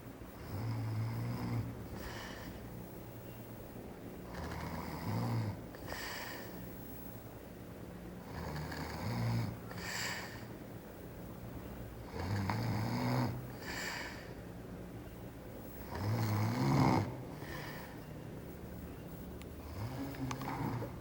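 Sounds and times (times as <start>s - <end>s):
woman snoring: 15.9s - 18.0s, 19.6s - 21.0s.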